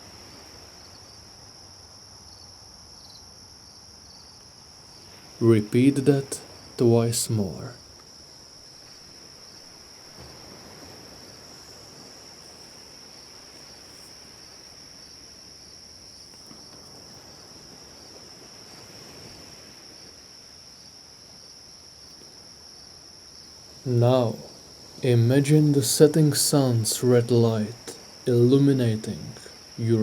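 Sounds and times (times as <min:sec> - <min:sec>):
surf washing: 0:09.0 - 0:15.2.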